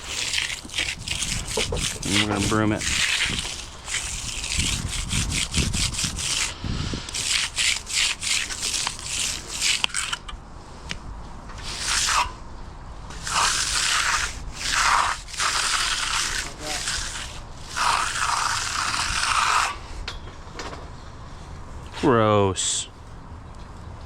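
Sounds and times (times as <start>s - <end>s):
broom scraping wet concrete: 0.0s - 10.3s, 11.6s - 12.4s, 13.1s - 20.0s.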